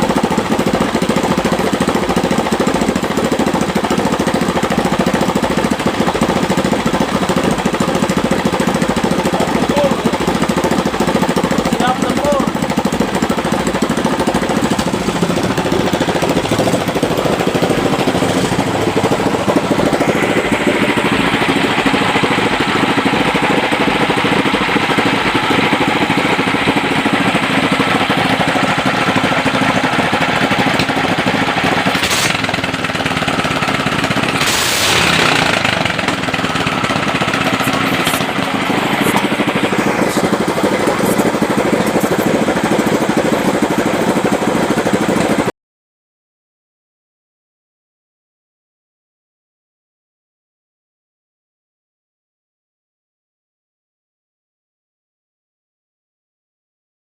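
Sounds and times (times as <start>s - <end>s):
boat engine running with knocking clatter: 0.0s - 45.5s.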